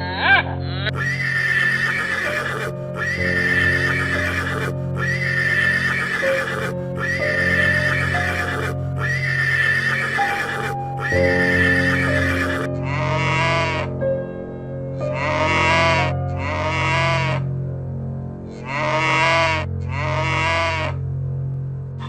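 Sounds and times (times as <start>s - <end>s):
background music: 0.0s - 22.0s
horse whinnying: 0.9s - 13.8s, 15.2s - 17.4s.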